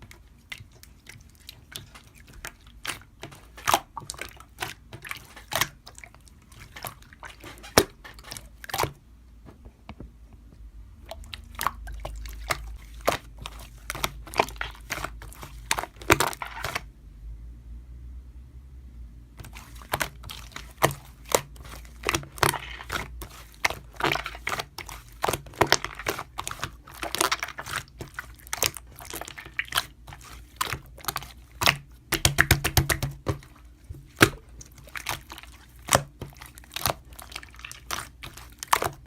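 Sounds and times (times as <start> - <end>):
slime squishing wet pops: 0.0 - 9.0, 11.1 - 16.9, 19.4 - 39.0.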